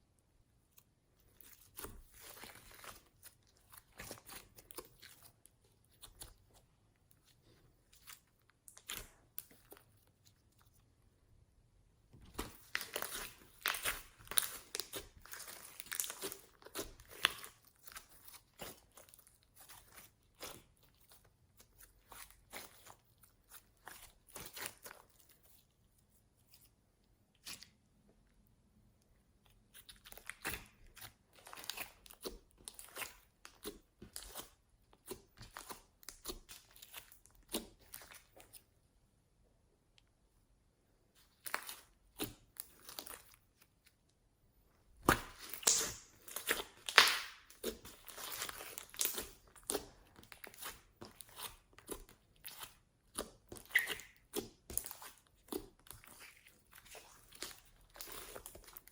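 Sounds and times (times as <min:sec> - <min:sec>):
slime crackling pops and squelches: 0:45.0 - 0:49.9, 0:53.1 - 0:55.0.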